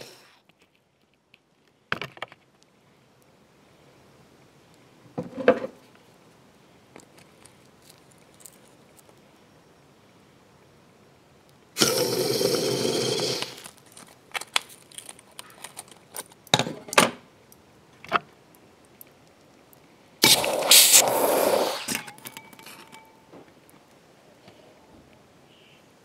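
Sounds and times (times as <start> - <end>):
torch flame hissing: 11.8 - 13.7, 20.2 - 22.0
flame crackles and pops: 18.5 - 22.0.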